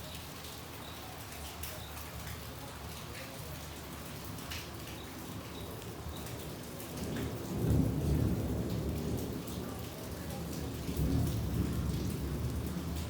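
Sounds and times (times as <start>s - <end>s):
steady rain with drips: 0.0s - 13.0s
low rumble of thunder: 6.5s - 13.0s.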